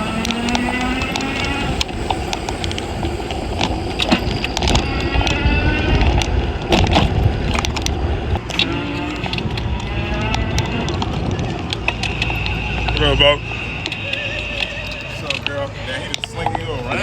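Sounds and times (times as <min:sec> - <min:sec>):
road rumble inside car: 0:00.0 - 0:17.0.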